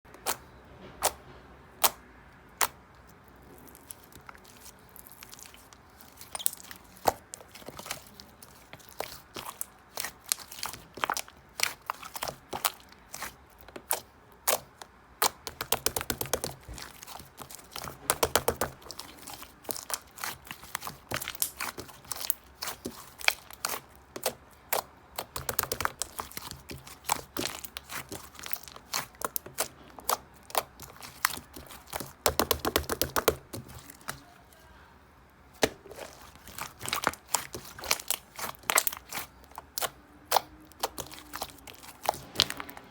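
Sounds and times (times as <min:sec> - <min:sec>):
crinkly rustling: 0:03.4 - 0:14.1, 0:25.2 - 0:32.3, 0:35.6 - 0:40.0, 0:40.6 - 0:42.9.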